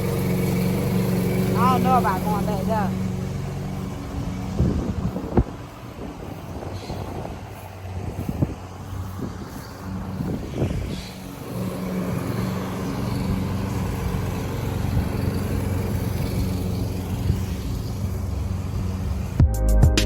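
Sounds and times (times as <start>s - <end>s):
lawn mower engine running: 0.0s - 19.4s
music: 19.4s - 20.0s.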